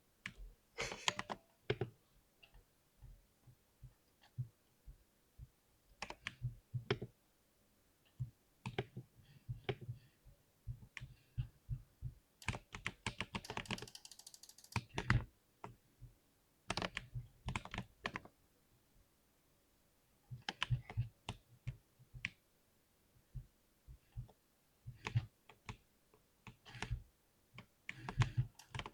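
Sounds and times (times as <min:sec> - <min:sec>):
keyboard key clicks: 0:12.4 - 0:15.2.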